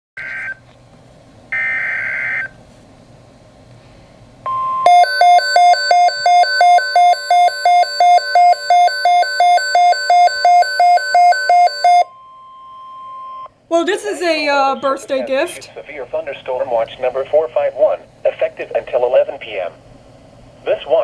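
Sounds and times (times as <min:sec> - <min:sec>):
harsh two-pitch alert tone: 0:04.5 - 0:12.1
short steady beep: 0:04.5 - 0:13.5.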